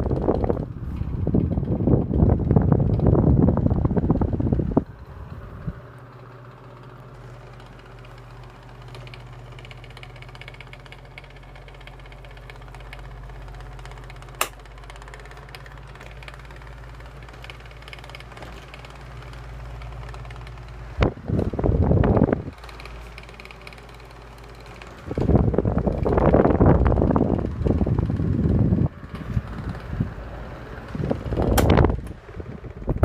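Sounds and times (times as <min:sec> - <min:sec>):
table fan humming: 0:00.0 - 0:33.0
sharp click: 0:14.2 - 0:14.7, 0:31.4 - 0:32.2.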